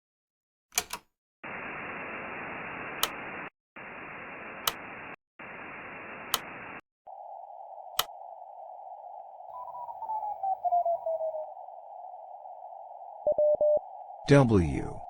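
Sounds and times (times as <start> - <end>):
radio static hiss: 1.4 - 15.0
sharp clicks: 3.0 - 3.2, 4.6 - 4.9, 6.3 - 6.6, 7.9 - 8.2.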